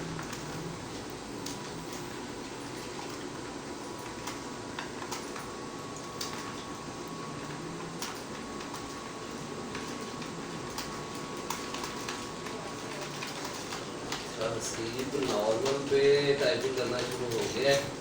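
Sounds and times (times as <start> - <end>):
fan-like room hum: 0.0 - 18.0.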